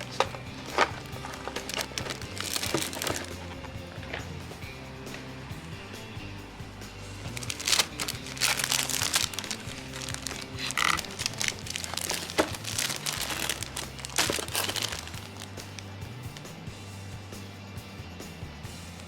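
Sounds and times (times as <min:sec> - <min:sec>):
packaging crinkling: 0:00.0 - 0:03.4, 0:07.3 - 0:15.8.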